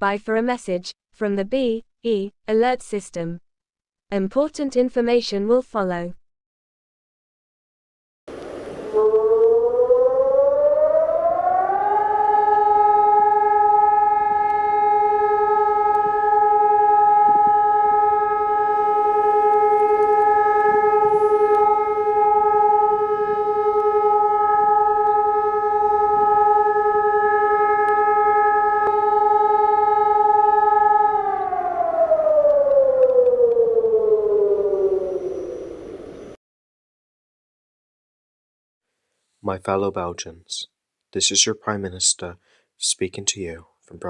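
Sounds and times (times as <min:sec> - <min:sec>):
warning siren wailing: 0:08.4 - 0:36.4.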